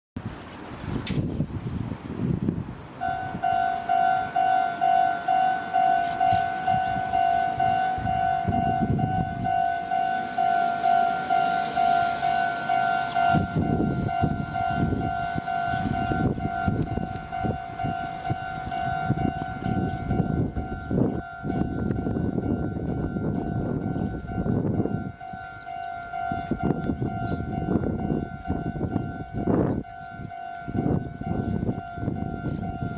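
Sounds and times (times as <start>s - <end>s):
level-crossing warning bell: 2.9s - 32.9s.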